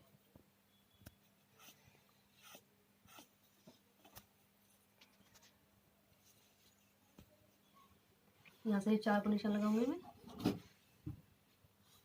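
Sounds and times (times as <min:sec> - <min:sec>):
marking tool scratching fabric: 0:01.5 - 0:04.2.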